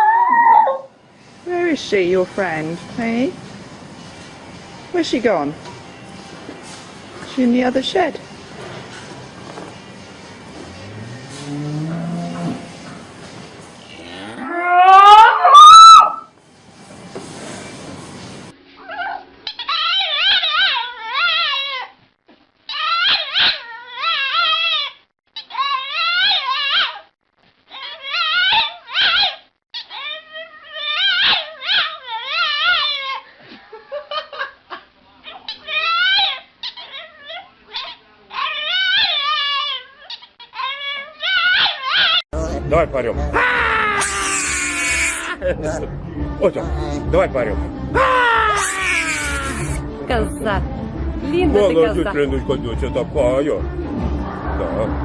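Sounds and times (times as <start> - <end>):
dog whining howls: 0.0 - 0.9, 14.4 - 16.3, 18.8 - 22.0, 22.7 - 27.1, 27.7 - 33.2, 38.3 - 42.2, 43.4 - 45.4, 48.0 - 49.8
cow mooing: 10.7 - 12.9, 13.9 - 15.2.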